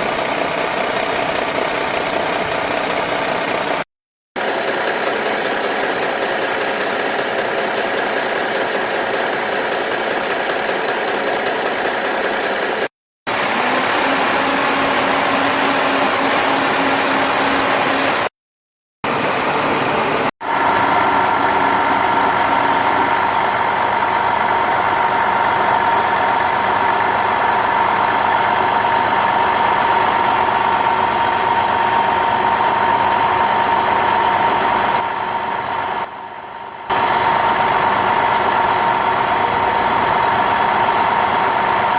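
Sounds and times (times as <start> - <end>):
vehicle engine running: 20.4 - 41.9.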